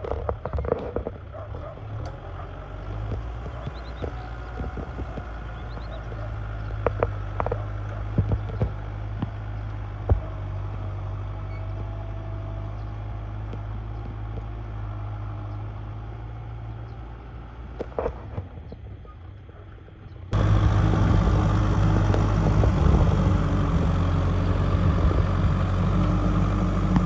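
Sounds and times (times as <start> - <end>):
tractor diesel engine running: 20.4 - 27.0.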